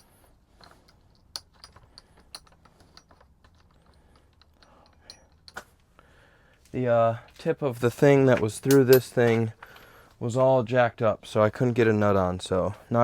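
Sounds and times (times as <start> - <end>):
small clicks of washer and nut: 0.0 - 5.8.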